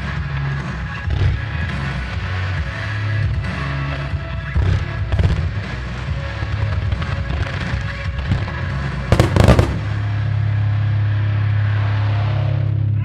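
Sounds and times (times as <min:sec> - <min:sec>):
fireworks bursting: 0:09.1 - 0:10.3.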